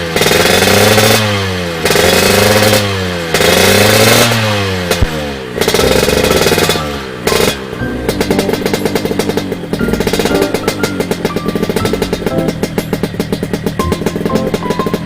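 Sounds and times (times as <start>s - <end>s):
motorcycle engine throttle blips: 5.6s - 15.0s.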